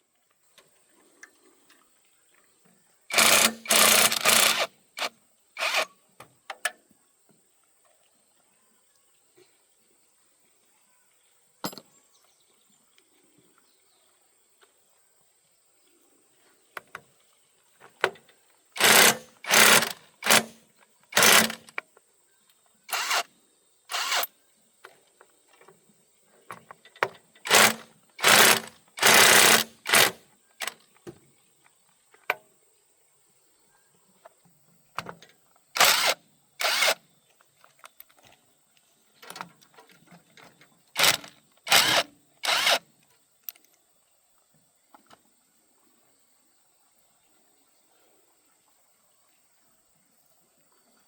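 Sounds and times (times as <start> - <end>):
power tool bursts: 3.1 - 5.9, 18.8 - 21.7, 22.9 - 23.3, 23.9 - 24.3, 27.4 - 30.8, 35.8 - 37.0, 41.0 - 42.8.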